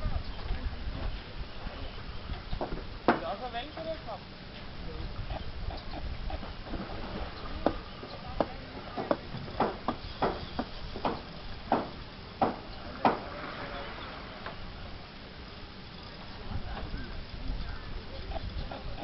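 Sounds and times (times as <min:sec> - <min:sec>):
short hollow knocks: 0:02.3 - 0:03.9, 0:06.4 - 0:13.3.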